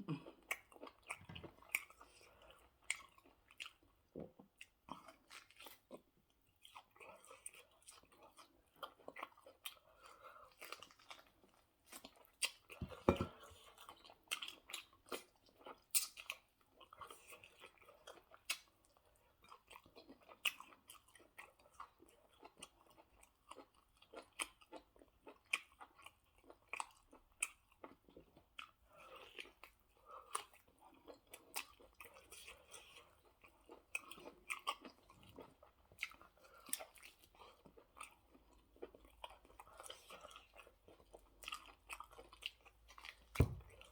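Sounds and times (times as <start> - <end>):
person chewing food: 0.0 - 43.9
thump: 43.4 - 43.9.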